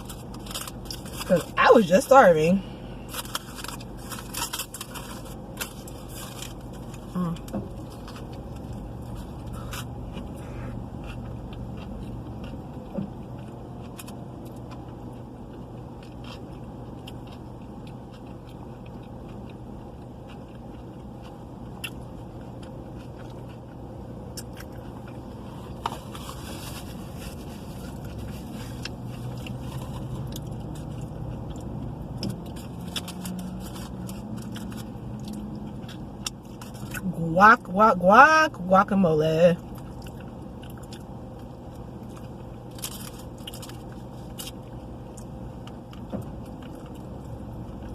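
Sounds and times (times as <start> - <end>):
car hum: 0.0 - 47.9
person chewing food: 3.0 - 37.0, 39.6 - 47.9.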